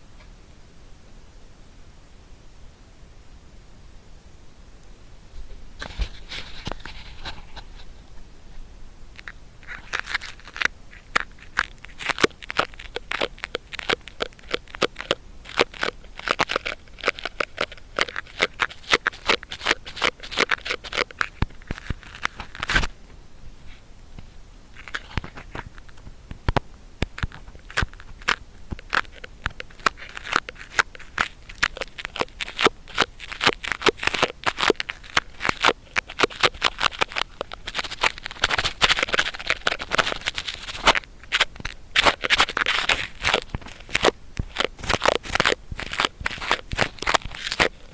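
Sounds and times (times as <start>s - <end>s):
cotton swab crackling in ear: 9.2s - 22.9s, 24.8s - 47.9s.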